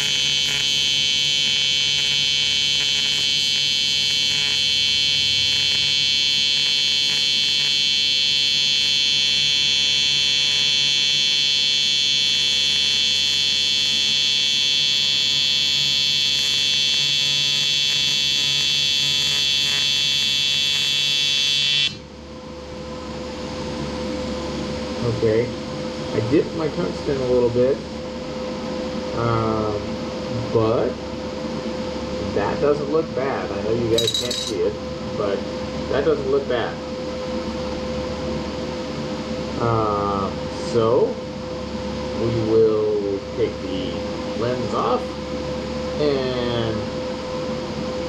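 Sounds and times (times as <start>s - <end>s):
welding arc buzz: 0.0s - 22.1s, 33.9s - 34.7s.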